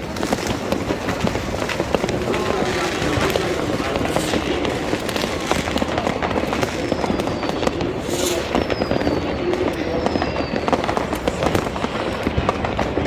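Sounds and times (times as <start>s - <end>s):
falling firework whistle: 0.0s - 13.0s
fireworks crackling and banging: 0.0s - 13.0s.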